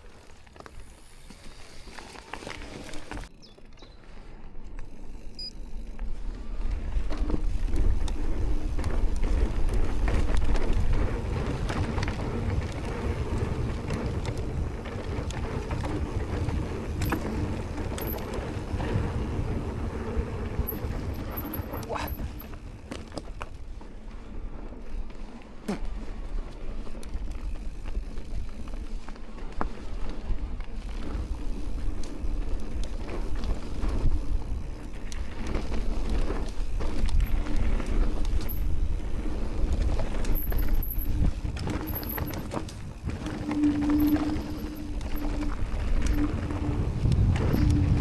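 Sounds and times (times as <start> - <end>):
bike clicking and rattling: 0.0 - 48.0
tyres rumbling on trail: 0.0 - 48.0
wind on microphone: 37.0 - 48.0.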